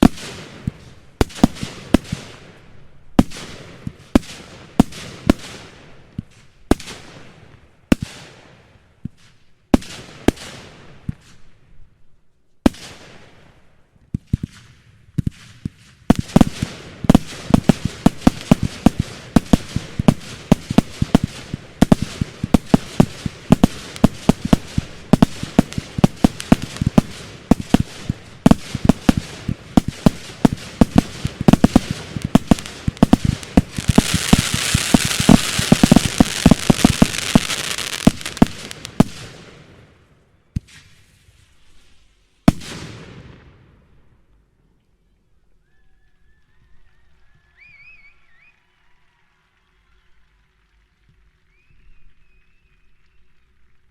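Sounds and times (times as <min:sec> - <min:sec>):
fireworks barrage: 0:00.0 - 0:09.2, 0:12.7 - 0:43.7
fireworks bangs and crackle: 0:00.0 - 0:11.6, 0:12.6 - 0:43.9.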